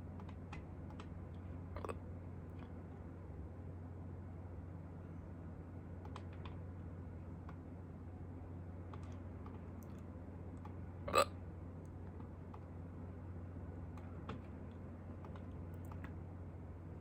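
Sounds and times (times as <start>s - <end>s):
steady low hum: 0.0s - 17.0s
person hiccuping: 11.1s - 11.4s.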